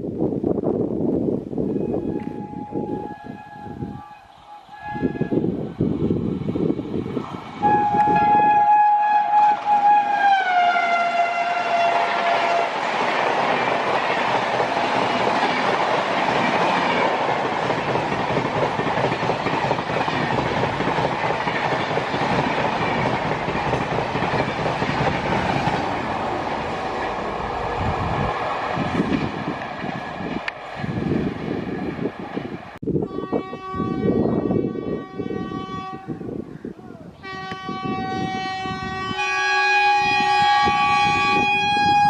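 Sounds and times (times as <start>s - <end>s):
train horn: 1.7s - 5.6s, 7.6s - 12.9s, 33.0s - 36.4s, 37.2s - 42.0s
train coaches rushing by: 2.0s - 32.8s.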